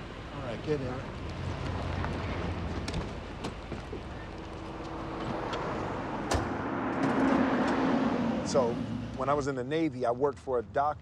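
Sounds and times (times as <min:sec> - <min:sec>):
street traffic: 0:00.0 - 0:11.0
car door shutting: 0:05.2 - 0:07.3.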